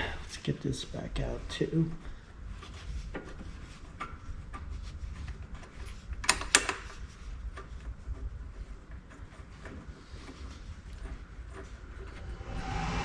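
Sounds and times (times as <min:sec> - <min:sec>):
steady low rumble: 0:12.0 - 0:13.0.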